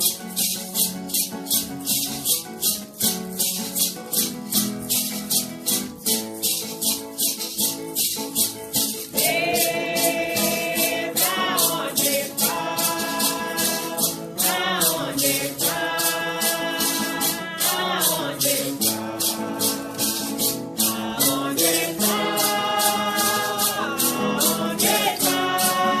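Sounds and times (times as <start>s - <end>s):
shaker beat: 0.0s - 26.0s
person singing: 9.0s - 26.0s.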